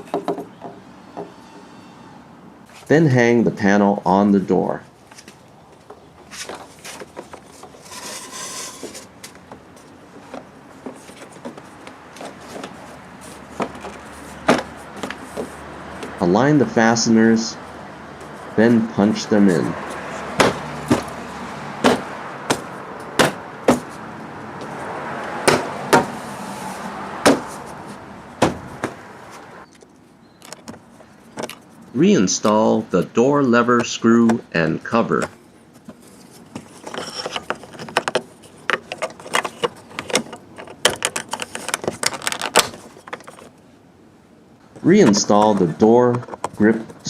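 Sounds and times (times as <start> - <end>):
plastic panel scraping on door: 6.8 - 9.2.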